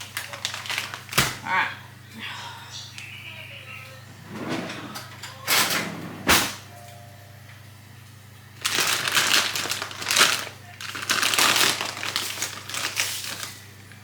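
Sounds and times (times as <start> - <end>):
sugar packet crinkling: 0.0 - 1.4, 8.6 - 13.7
steady low hum: 0.0 - 14.0.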